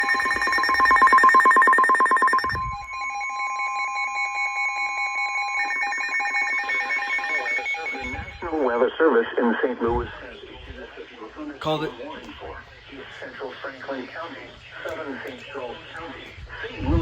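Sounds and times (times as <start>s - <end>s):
pulsing electronic alert tone: 0.0s - 8.8s.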